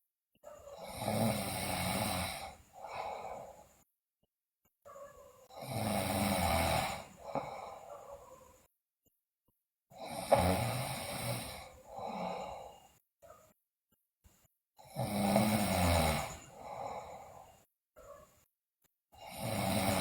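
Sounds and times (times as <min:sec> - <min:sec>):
girl snoring: 0:00.6 - 0:03.7, 0:05.4 - 0:08.1, 0:09.9 - 0:13.0, 0:14.8 - 0:17.7, 0:19.2 - 0:20.0.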